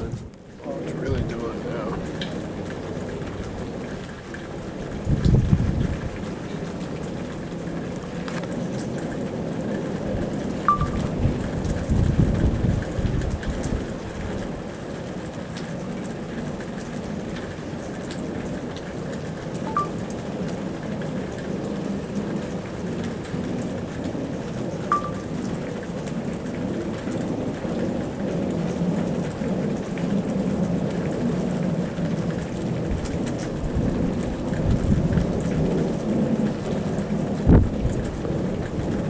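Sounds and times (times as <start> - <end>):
distant rumbling roar: 0.0 - 14.7.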